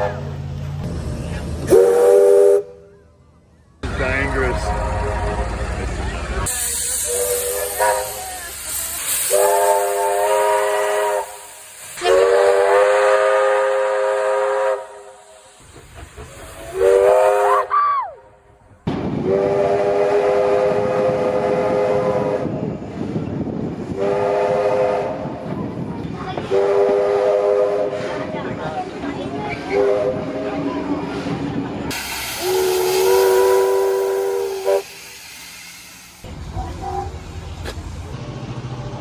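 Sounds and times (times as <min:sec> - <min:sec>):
locomotive whistle blasts: 0:01.7 - 0:03.1, 0:06.9 - 0:08.4, 0:09.2 - 0:15.2, 0:16.7 - 0:18.2, 0:19.2 - 0:22.5, 0:26.5 - 0:28.0, 0:32.0 - 0:35.2
steam hissing: 0:06.4 - 0:17.7, 0:31.0 - 0:38.2.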